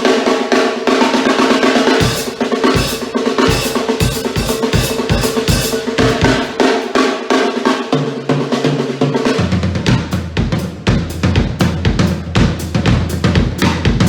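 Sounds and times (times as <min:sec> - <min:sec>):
snare drum roll: 0:00.0 - 0:14.0
bass drum kicks: 0:02.0 - 0:06.6, 0:09.6 - 0:14.0.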